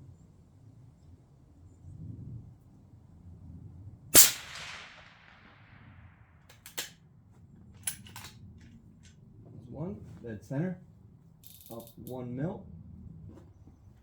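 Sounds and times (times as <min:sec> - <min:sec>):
rifle shot with echo: 0:04.2 - 0:06.9.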